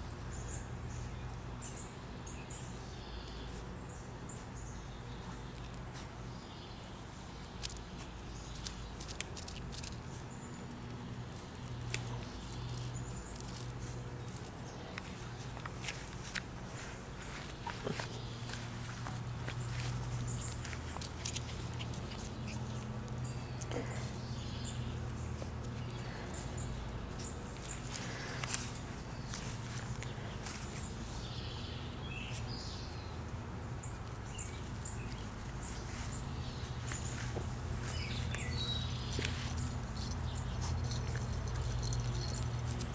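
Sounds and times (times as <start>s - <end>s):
small birds chirping: 0.0s - 42.9s
puppies pattering and clicking: 7.6s - 23.8s, 33.9s - 42.9s.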